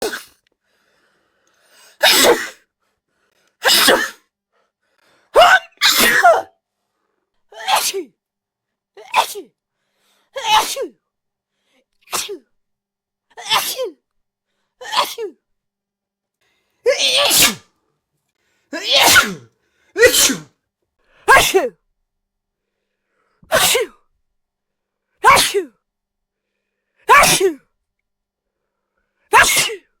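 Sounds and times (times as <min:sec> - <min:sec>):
person sneezing: 0:00.0 - 0:00.4, 0:02.0 - 0:02.6, 0:03.6 - 0:04.3, 0:05.4 - 0:06.5, 0:07.6 - 0:08.1, 0:09.0 - 0:09.5, 0:10.4 - 0:11.0, 0:12.0 - 0:12.5, 0:13.4 - 0:14.0, 0:14.8 - 0:15.4, 0:16.9 - 0:17.6, 0:18.8 - 0:20.5, 0:21.3 - 0:21.8, 0:23.4 - 0:24.0, 0:25.2 - 0:25.8, 0:27.1 - 0:27.6, 0:29.3 - 0:29.9.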